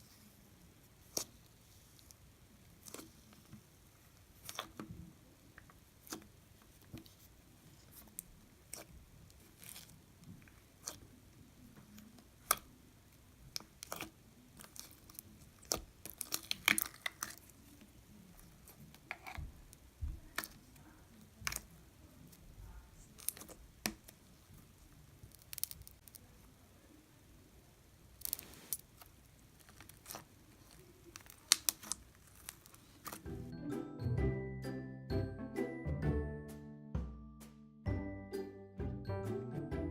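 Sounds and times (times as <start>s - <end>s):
slime squishing with sticky clicks: 1.0s - 26.4s, 28.1s - 33.4s.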